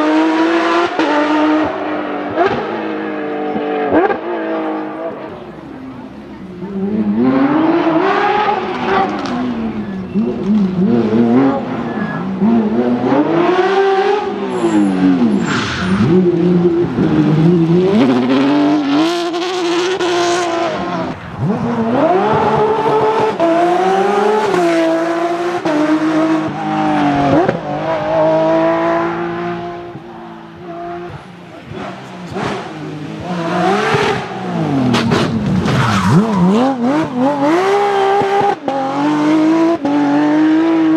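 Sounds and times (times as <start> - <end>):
rally car engine revving: 0.0 - 40.9.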